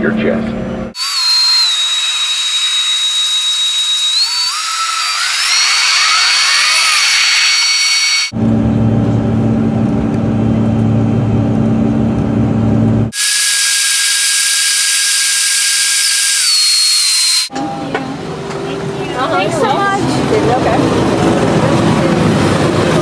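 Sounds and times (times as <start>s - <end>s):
low steady engine drone: 0.0s - 1.0s, 8.3s - 13.4s, 14.0s - 23.0s
jet engine turbine whine: 0.6s - 11.5s, 12.6s - 19.2s.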